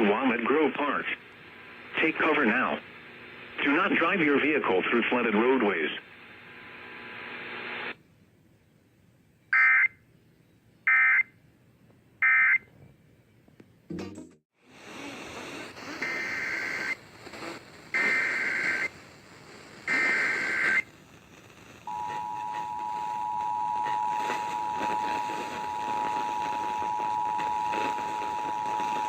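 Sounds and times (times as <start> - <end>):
radio hiss: 0.0 - 8.0, 14.6 - 29.0
digital data bursts: 15.9 - 17.0
two-tone attention signal: 21.9 - 29.0.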